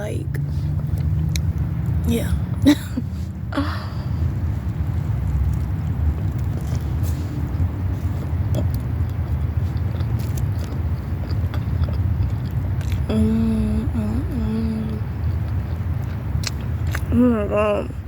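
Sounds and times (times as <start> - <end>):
steady low rumble: 0.0 - 18.0
person chewing a burger: 0.7 - 2.0, 4.6 - 13.1, 15.2 - 17.1
person humming mmm: 13.1 - 15.0.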